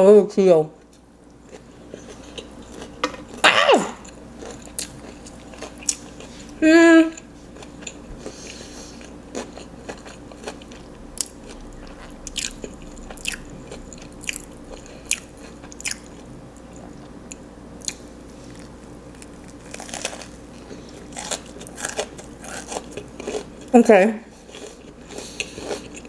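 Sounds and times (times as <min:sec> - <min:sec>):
crunchy chewing: 0:00.9 - 0:06.6, 0:07.2 - 0:23.7, 0:24.4 - 0:26.0.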